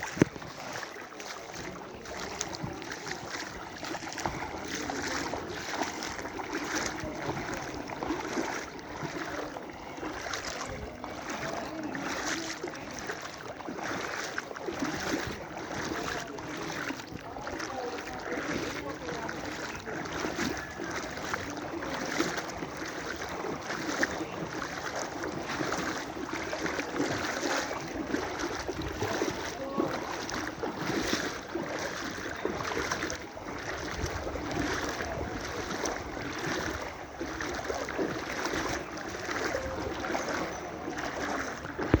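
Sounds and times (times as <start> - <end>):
water sloshing and splashing: 0.0 - 42.0
wind noise on microphone: 33.3 - 37.6, 41.6 - 42.0.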